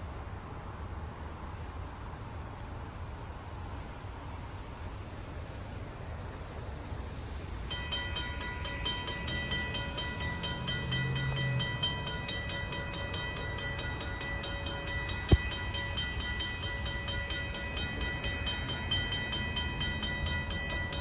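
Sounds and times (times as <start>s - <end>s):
level-crossing bell ringing: 7.7s - 21.0s.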